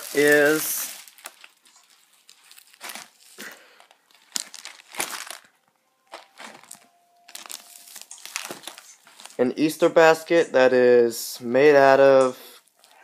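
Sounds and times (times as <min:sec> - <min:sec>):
plastic wrapping crinkling: 0:00.0 - 0:09.8, 0:12.5 - 0:13.0.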